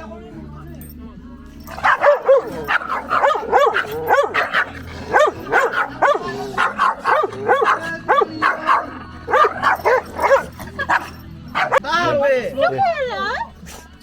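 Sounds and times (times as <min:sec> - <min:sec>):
dog barking: 0:01.6 - 0:11.9.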